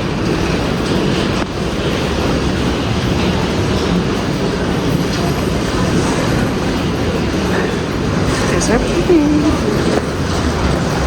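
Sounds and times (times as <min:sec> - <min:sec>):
vehicle rumbling and rattling: 0:00.0 - 0:11.0.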